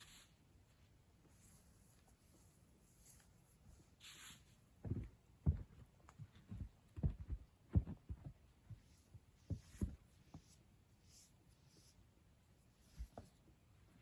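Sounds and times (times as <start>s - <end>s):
low muffled thumps: 6.5s - 8.8s.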